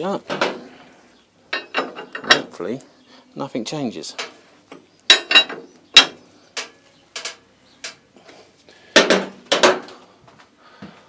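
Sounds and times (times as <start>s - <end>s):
hand tools clicking on metal: 5.1s - 8.0s.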